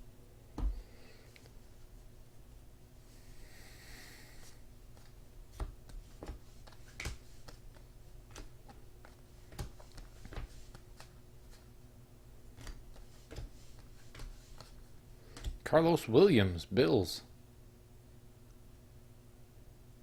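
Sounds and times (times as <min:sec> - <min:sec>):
faint steady hum: 0:00.0 - 0:20.0
cards clicking and tapping: 0:05.0 - 0:11.6, 0:12.6 - 0:15.6.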